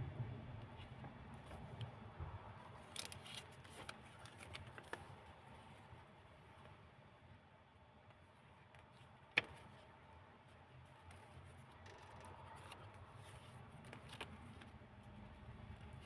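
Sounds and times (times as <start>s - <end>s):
paper pages rustling: 2.8s - 6.0s, 8.7s - 16.0s.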